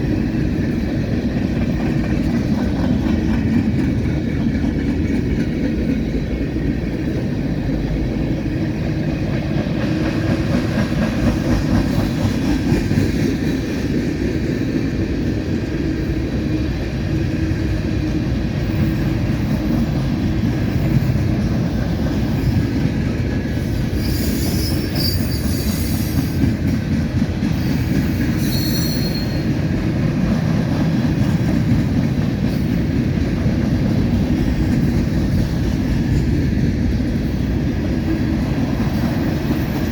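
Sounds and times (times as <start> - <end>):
train wheels rumbling on rail: 0.0 - 39.9
high-pitched wheel squeals: 24.0 - 26.2, 28.4 - 29.5.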